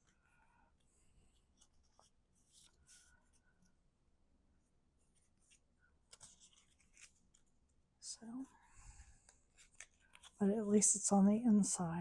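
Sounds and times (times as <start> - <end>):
paper rustling: 5.1 - 7.6, 9.4 - 10.4.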